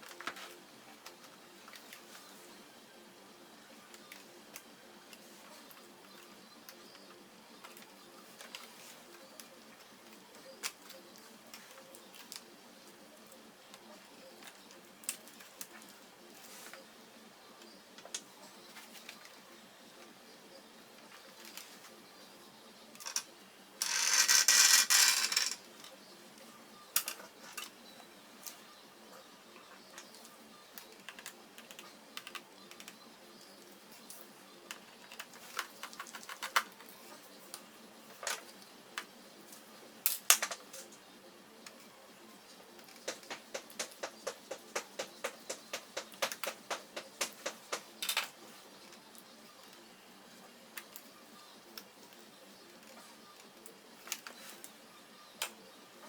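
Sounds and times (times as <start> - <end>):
small hard parts rattling: 23.0 - 25.9
laptop parts clicking: 29.9 - 37.6, 42.8 - 49.0.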